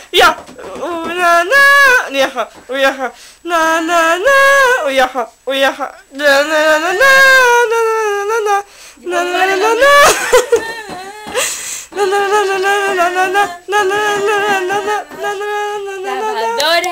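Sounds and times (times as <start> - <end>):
harsh breathy bursts: 2.6 - 3.5, 8.6 - 9.0, 11.4 - 12.0
high voice wailing wordlessly: 12.0 - 16.9.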